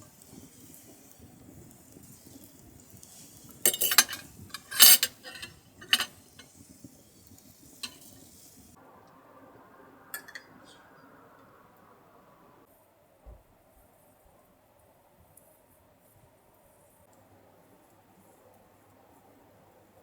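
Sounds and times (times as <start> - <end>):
dishes and cutlery clattering: 3.7 - 6.5, 7.8 - 8.2, 10.2 - 10.5.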